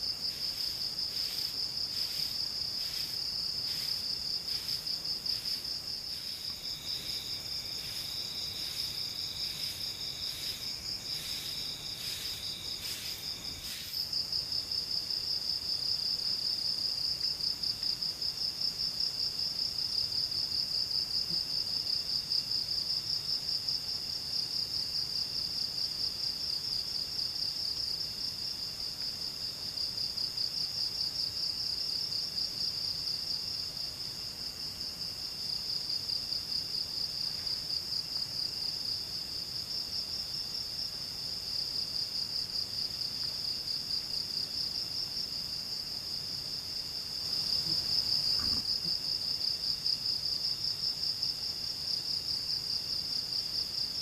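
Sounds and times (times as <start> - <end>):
crickets trilling: 0.0 - 18.8, 34.5 - 54.0.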